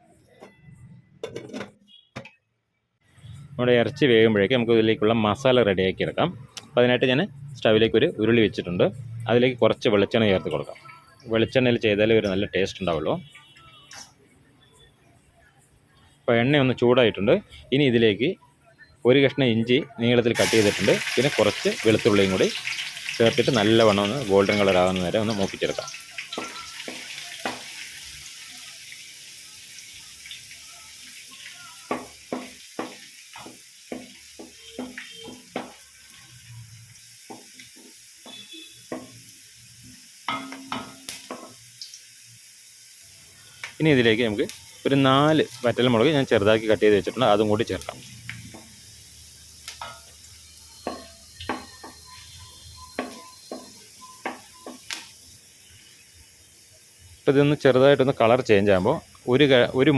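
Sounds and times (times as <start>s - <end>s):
ginger and garlic sizzling in oil: 20.3s - 59.9s
spoon scraping a pan: 25.8s - 27.9s, 31.8s - 35.9s, 50.8s - 55.1s.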